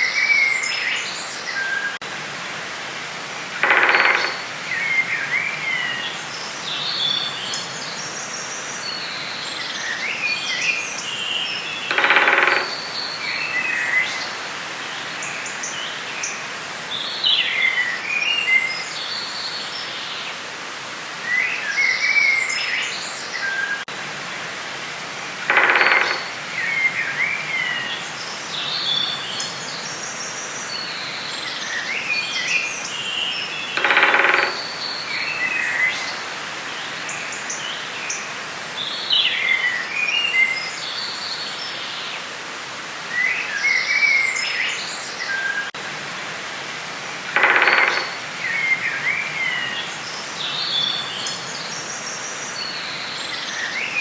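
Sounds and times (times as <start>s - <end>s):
steady hiss: 1.0s - 54.0s
rattling bird call: 3.6s - 4.5s, 11.9s - 13.0s, 25.5s - 26.4s, 33.8s - 34.8s, 47.3s - 48.2s
birds singing and chirping: 3.6s - 19.5s, 25.5s - 41.6s, 47.3s - 54.0s.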